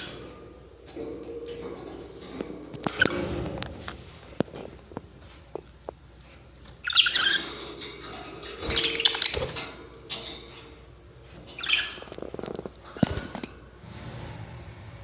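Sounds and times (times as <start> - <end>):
parrots chirping: 6.7 - 10.8, 11.4 - 13.5.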